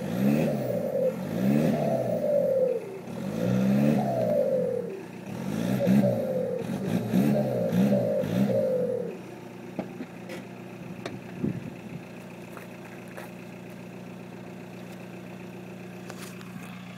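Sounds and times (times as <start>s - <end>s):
diesel engine revving: 0.0s - 16.9s
engine idling: 0.0s - 16.9s.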